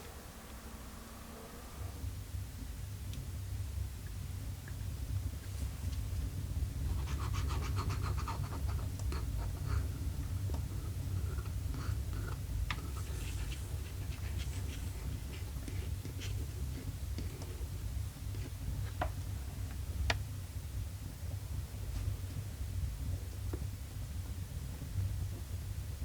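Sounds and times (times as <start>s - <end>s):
steady low hum: 0.0s - 26.0s
light scratching: 11.2s - 17.6s.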